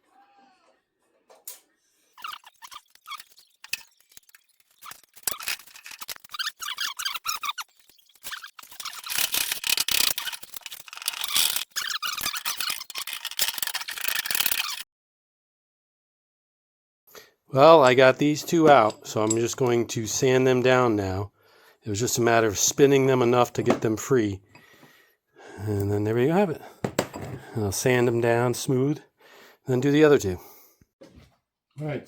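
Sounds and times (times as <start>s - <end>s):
rusted metal squeaking and grating: 2.1s - 14.8s.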